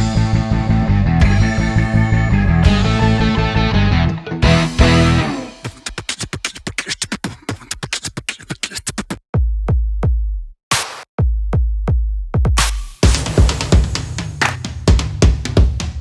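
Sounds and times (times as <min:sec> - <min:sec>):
electronic music with drum-machine beat: 0:04.4 - 0:15.8.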